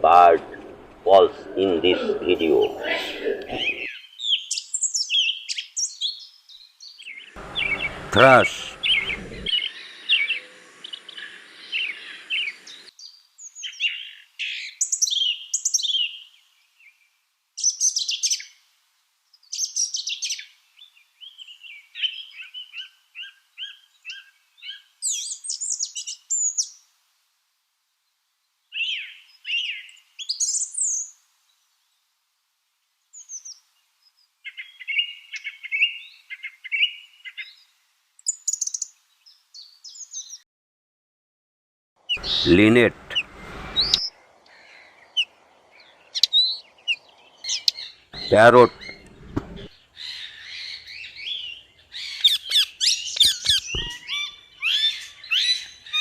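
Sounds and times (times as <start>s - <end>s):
thrush singing: 0.0s - 3.9s, 7.4s - 9.6s.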